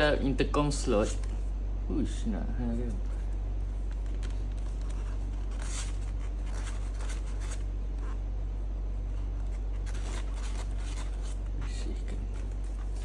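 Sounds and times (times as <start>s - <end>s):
steady low hum: 0.0s - 13.0s
cloth rubbing inside helmet: 9.2s - 13.0s.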